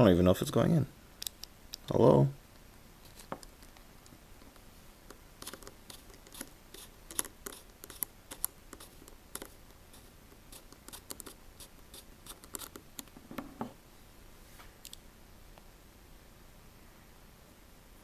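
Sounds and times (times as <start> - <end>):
screwdriver clicking and scraping: 5.1 - 9.8, 10.5 - 13.1.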